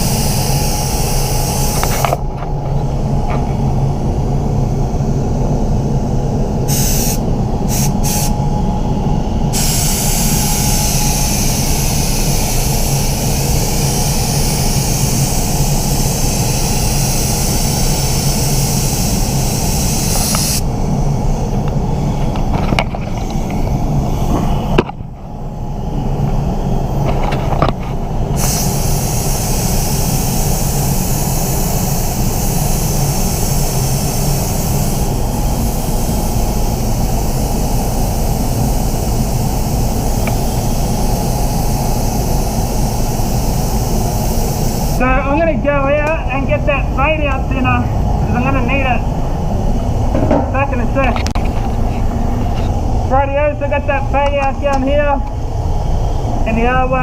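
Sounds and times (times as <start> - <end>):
spray gun air hissing: 0.0 - 2.2, 6.6 - 8.5, 9.4 - 22.5, 28.2 - 45.8
low machinery hum: 0.0 - 57.0.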